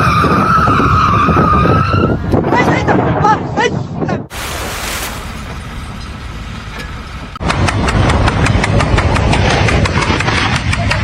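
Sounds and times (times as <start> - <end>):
deep engine with rapid clatter: 6.0 - 11.0.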